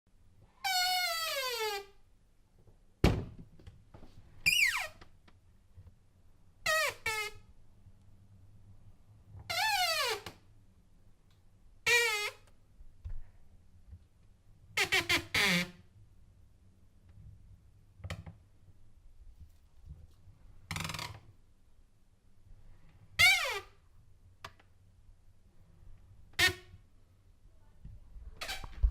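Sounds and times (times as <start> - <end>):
door hinges squeaking: 4.4 - 5.0, 9.5 - 10.4, 28.4 - 28.9.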